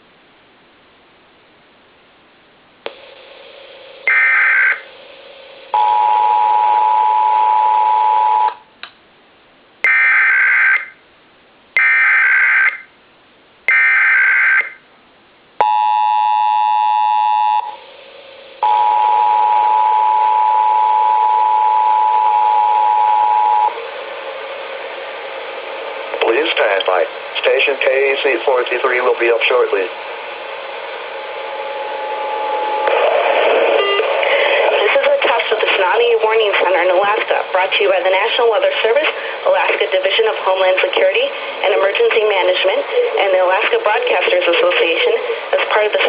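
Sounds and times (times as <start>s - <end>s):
radio hiss: 2.9s - 5.8s, 23.7s - 46.0s
harsh multi-tone signal: 3.1s - 8.6s, 9.8s - 11.0s, 11.8s - 12.9s, 13.7s - 14.8s, 15.6s - 17.9s, 18.6s - 23.8s, 31.2s - 34.2s
buzzy digital header bursts: 4.0s - 4.9s
two-tone attention signal: 33.8s - 34.0s.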